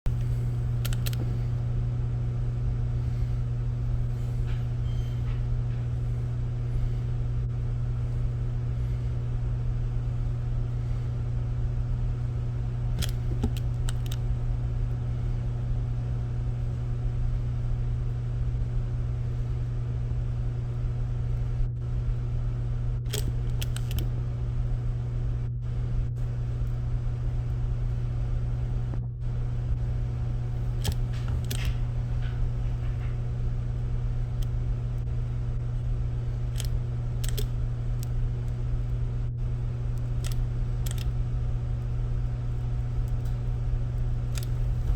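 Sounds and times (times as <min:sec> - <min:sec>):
faint clicks and ticks: 0:00.1 - 0:01.6, 0:13.0 - 0:14.2, 0:23.1 - 0:24.1, 0:30.4 - 0:44.9
low electrical hum: 0:00.1 - 0:44.9.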